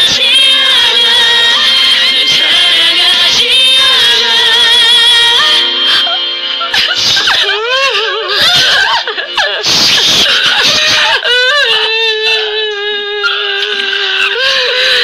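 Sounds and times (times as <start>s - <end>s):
voice holding a long note: 0.0s - 11.2s
people laughing and shrieking: 0.0s - 15.0s.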